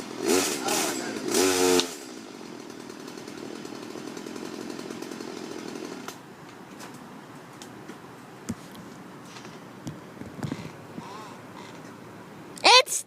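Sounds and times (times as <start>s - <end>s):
chainsaw running: 0.0s - 6.2s.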